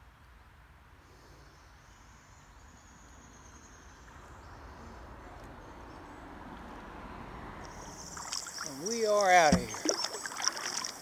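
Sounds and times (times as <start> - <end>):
insects trilling: 7.7 - 11.0.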